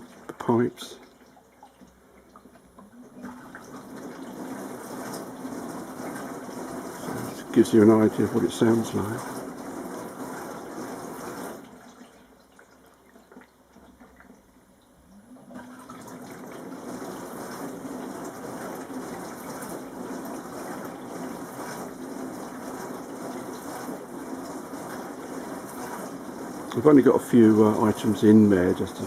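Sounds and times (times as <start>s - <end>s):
pump hum: 0.0s - 29.0s
dishwasher water spraying: 3.1s - 12.4s, 15.5s - 29.0s.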